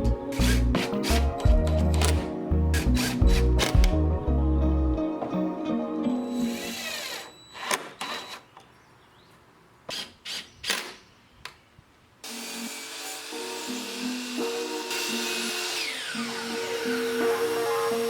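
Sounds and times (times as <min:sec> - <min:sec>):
background music: 0:00.0 - 0:06.9, 0:12.4 - 0:18.0
power drill driving screws into plywood: 0:01.9 - 0:04.0, 0:06.3 - 0:08.7, 0:09.9 - 0:11.1, 0:12.2 - 0:18.0.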